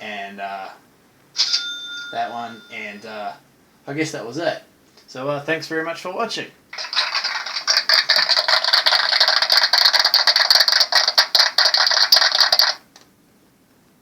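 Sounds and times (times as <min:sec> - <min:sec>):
crackling sound effect from tiny speaker: 0:06.7 - 0:13.1.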